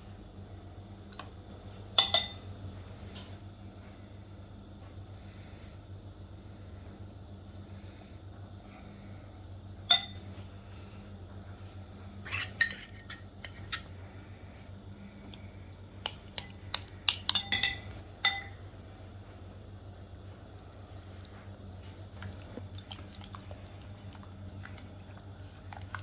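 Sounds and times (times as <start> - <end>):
steady low hum: 0.0 - 26.0
cutlery clinking against dishes: 2.0 - 2.4, 12.3 - 13.9, 17.1 - 18.6.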